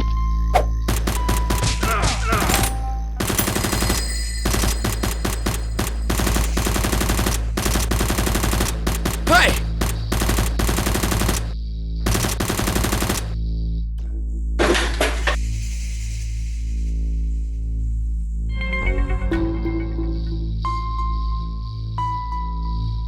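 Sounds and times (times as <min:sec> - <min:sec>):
automatic gunfire bursts: 0:00.9 - 0:13.4
background music with low bass: 0:11.5 - 0:23.0.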